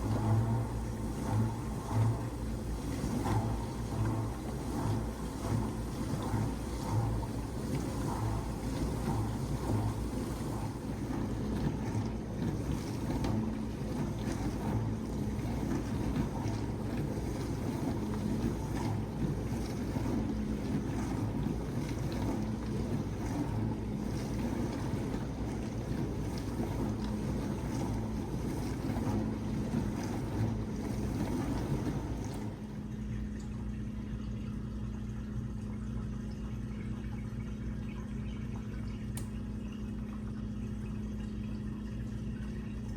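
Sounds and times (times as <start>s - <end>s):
water spraying in dishwasher: 0.0s - 32.9s
dishwasher motor hum: 0.0s - 42.9s
dishwasher pump hum: 0.0s - 42.9s.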